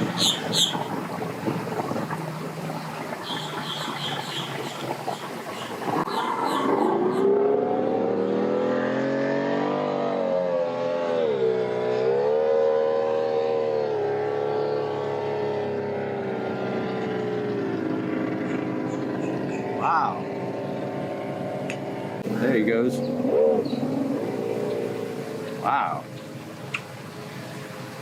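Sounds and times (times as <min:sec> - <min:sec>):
engine running at changing speed: 0:05.8 - 0:28.0.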